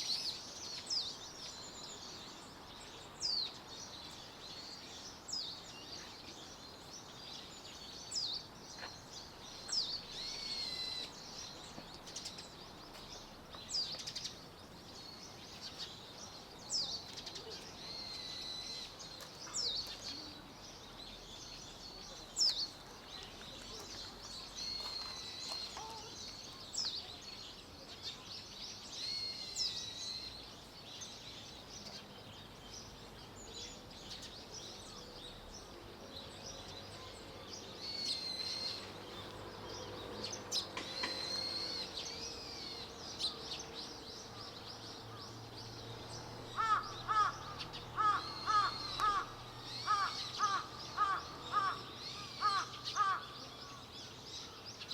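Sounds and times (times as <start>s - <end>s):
small birds chirping: 0.0s - 54.9s
crow cawing: 46.6s - 51.8s.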